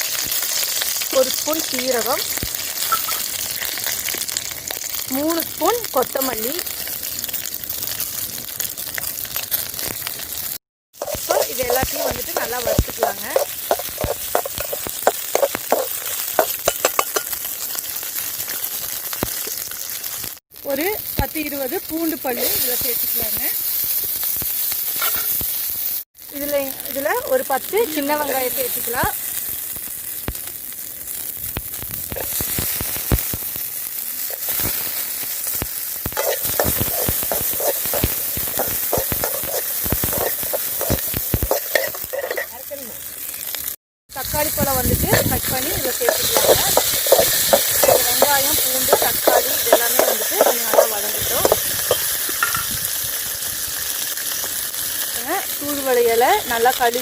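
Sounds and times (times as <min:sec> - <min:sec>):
spices sizzling in oil: 0:00.0 - 0:57.0
spoon clicking and scraping pan: 0:11.0 - 0:17.4, 0:36.1 - 0:42.6, 0:45.8 - 0:52.7.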